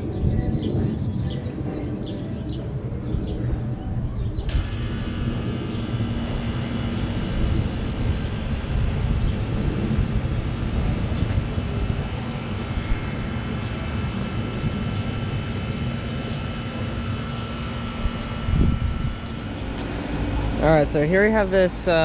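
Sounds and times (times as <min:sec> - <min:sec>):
air conditioner hum and fan whoosh: 0:00.0 - 0:22.0
bright hiss with whining tones: 0:04.5 - 0:19.9.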